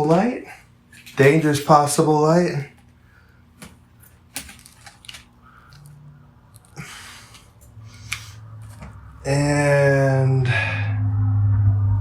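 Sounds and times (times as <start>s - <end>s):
cord rustling: 2.7s - 9.1s
cutters crunching on cable: 3.6s - 8.9s.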